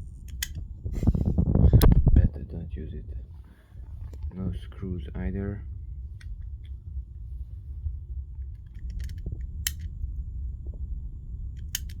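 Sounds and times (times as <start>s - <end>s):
low steady rumble: 0.0s - 12.0s
light switch clicking: 0.3s - 0.6s, 8.8s - 9.9s, 11.6s - 12.0s.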